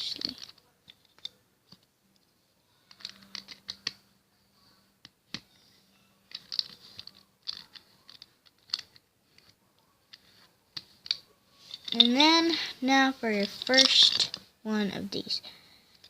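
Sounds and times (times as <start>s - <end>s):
plastic cube pieces clicking: 2.9s - 4.0s, 6.3s - 9.5s.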